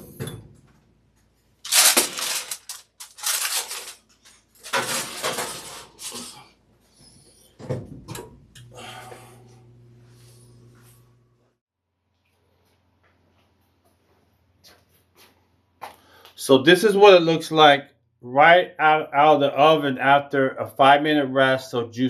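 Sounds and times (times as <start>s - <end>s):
aluminium foil crinkling: 1.6s - 6.4s
low steady hum: 7.7s - 11.6s.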